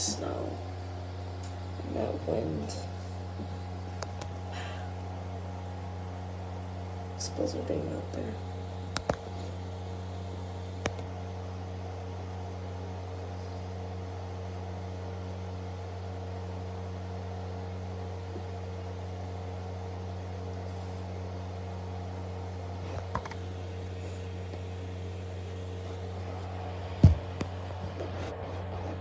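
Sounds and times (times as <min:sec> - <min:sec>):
mechanical hum: 0:00.0 - 0:29.0.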